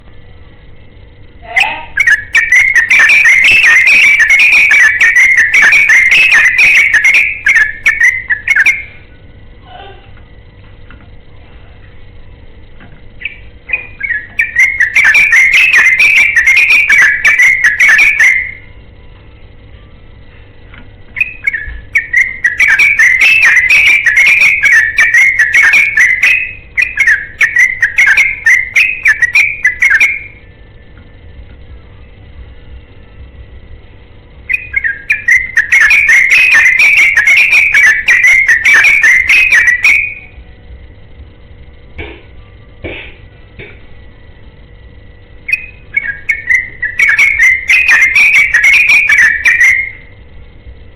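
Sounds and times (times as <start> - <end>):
bird singing chattering song: 1.4 - 9.2, 13.1 - 18.7, 21.1 - 31.3, 34.4 - 40.4, 45.4 - 50.6.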